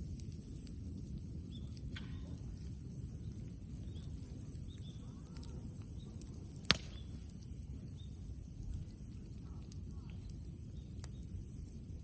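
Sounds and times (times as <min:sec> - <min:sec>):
bonfire burning and crackling: 0:00.0 - 0:12.0
small birds chirping: 0:01.4 - 0:02.4, 0:03.1 - 0:11.5.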